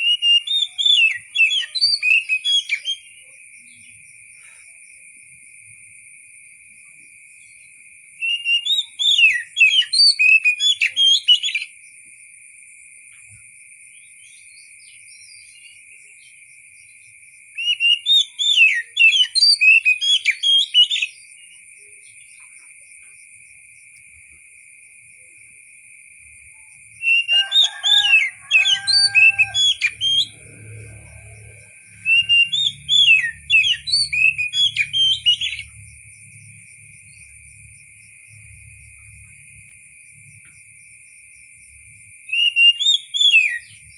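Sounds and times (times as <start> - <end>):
bird singing whistled phrases: 0.0 - 3.2, 8.2 - 11.7, 17.6 - 21.2, 27.0 - 30.4, 32.0 - 35.7, 42.3 - 43.8.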